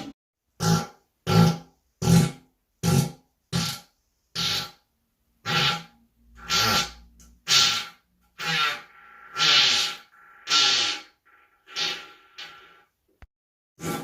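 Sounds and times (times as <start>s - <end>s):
short raspy farts: 5.4s - 12.9s.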